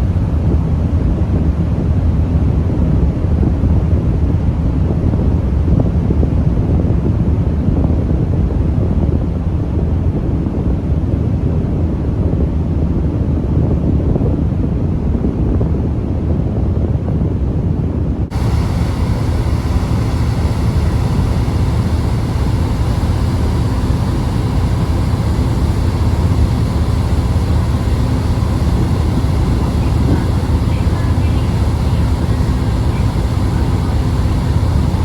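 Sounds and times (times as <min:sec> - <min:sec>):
wind: 0:00.0 - 0:35.0
faint steady hum: 0:18.3 - 0:35.0
ferry engines droning: 0:18.3 - 0:35.0
water noise: 0:18.3 - 0:35.0.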